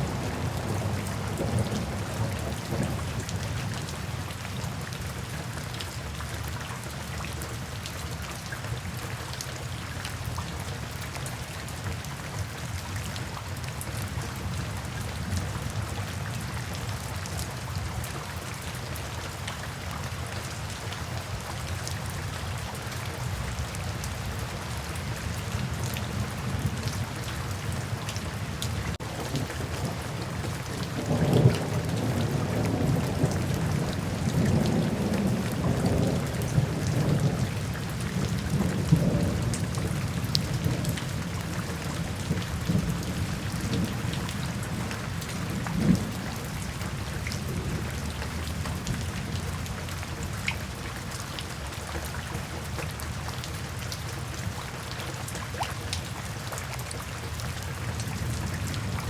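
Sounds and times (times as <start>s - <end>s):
distant thunder rumbling: 0.0s - 3.4s, 29.0s - 49.5s
steady rain falling: 0.0s - 59.0s
raindrops ticking: 28.1s - 54.2s.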